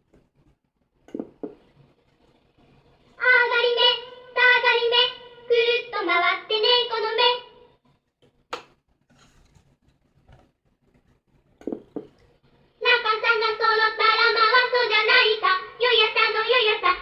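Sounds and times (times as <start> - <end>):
child singing through small speaker: 3.2 - 7.7, 12.8 - 17.0.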